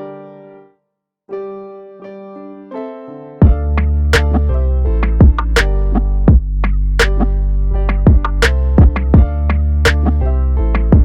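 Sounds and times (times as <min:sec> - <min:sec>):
electronic beat with deep bass: 0:03.4 - 0:11.0.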